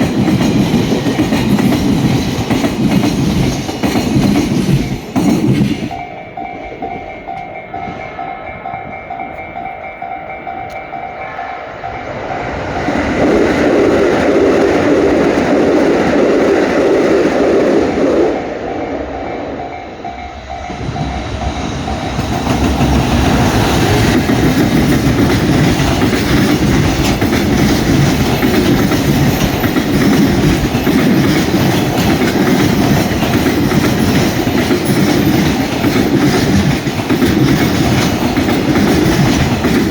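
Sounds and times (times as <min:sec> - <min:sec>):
train rumbling past on tracks: 0:00.0 - 0:39.9
steady tone: 0:17.2 - 0:25.3.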